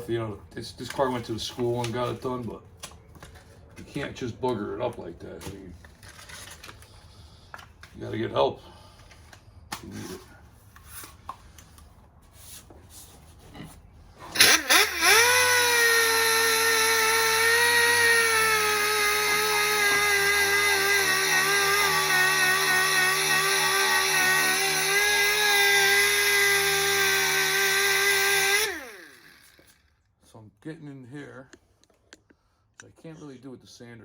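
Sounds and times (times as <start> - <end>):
power sander whining: 14.3 - 29.8.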